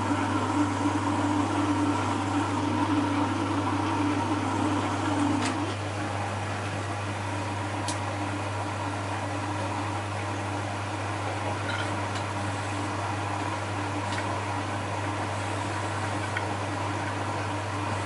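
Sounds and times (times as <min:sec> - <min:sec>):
washing machine humming: 0:00.0 - 0:18.0.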